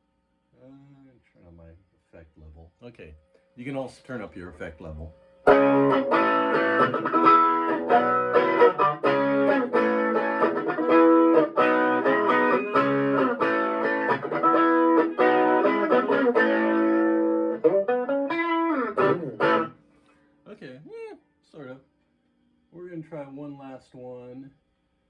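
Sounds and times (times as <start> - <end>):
electric guitar chords with flange: 5.5 - 19.8.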